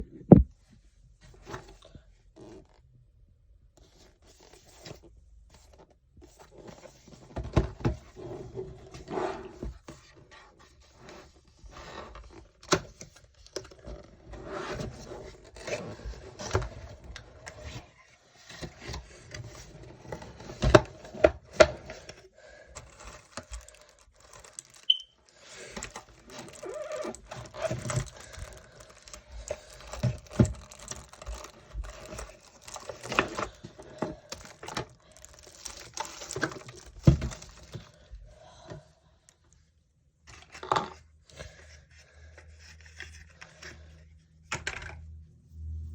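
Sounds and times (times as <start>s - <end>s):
cardboard and plastic packaging rustling: 3.8s - 38.2s.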